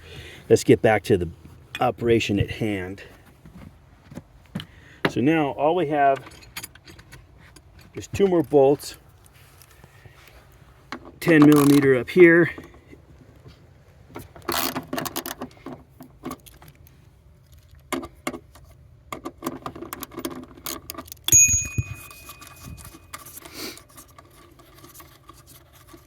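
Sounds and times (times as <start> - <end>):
sharp metal clank: 21.3 - 22.9.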